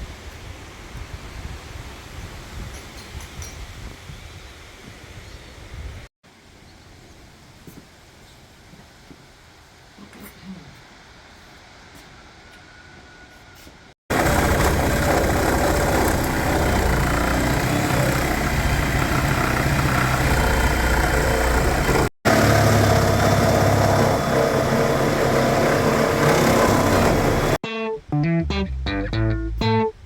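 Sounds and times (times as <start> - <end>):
engine running: 14.1 - 27.6.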